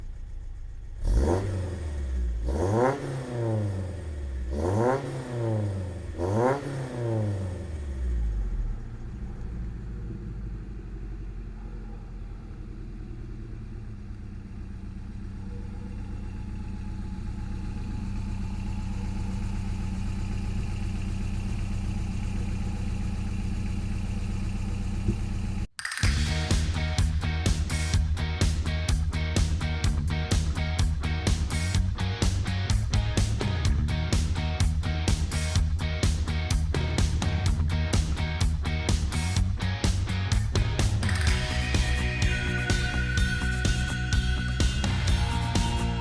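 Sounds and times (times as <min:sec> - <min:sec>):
truck engine revving and idling: 0:00.0 - 0:46.0.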